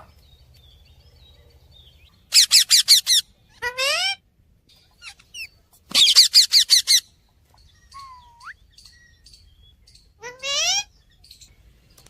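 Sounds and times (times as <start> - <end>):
parrot chirps: 2.3 - 4.2, 5.0 - 7.1
parrot squawking: 2.3 - 4.2, 5.0 - 7.1, 10.2 - 10.9.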